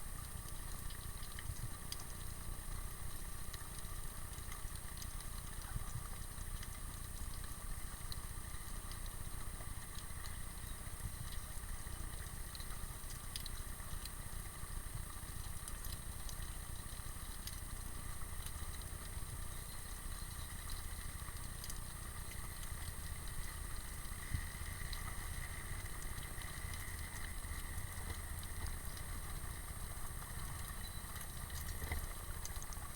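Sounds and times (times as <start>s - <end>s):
underwater low rumble: 0.0s - 32.9s
faint clicks: 12.2s - 14.2s, 19.8s - 22.0s, 22.6s - 32.9s.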